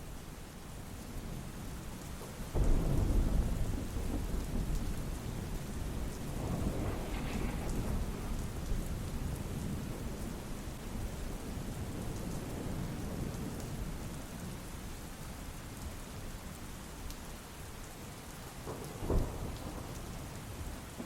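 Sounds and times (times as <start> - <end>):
steady rain: 0.0 - 21.0
thunder rumbling: 2.5 - 14.1, 18.7 - 21.0.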